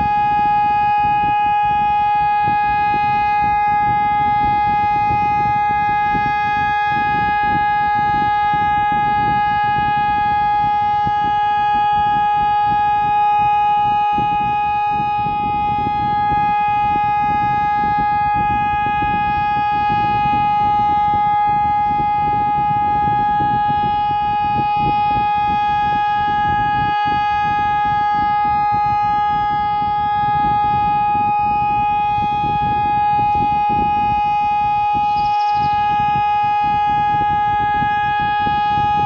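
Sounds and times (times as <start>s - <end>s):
civil defence siren steady tone: 0.0s - 39.0s
rough low noise: 31.8s - 37.5s.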